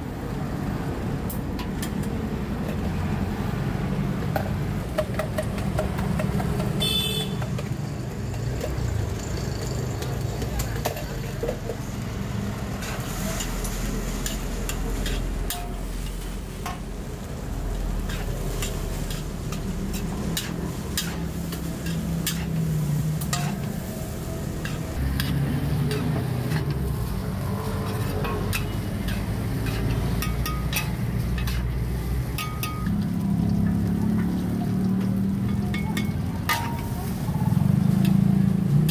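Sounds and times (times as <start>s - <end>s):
frying sizzle: 0.1s - 38.9s
metal spatula clinking on wok: 23.2s - 23.7s, 28.2s - 31.7s, 32.3s - 32.9s, 35.4s - 37.0s.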